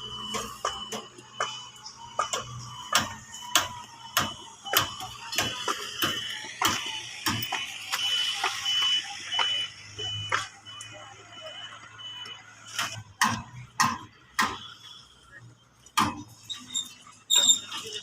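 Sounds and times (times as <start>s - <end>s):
hammer strikes: 0.1s - 8.7s, 12.8s - 14.9s, 16.0s - 16.4s.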